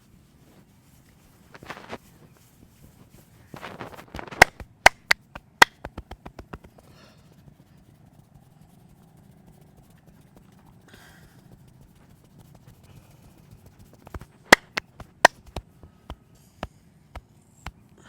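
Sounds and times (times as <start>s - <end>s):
hands rubbing skin: 0.0s - 18.0s
sharp hand taps: 4.2s - 7.0s, 10.3s - 17.8s.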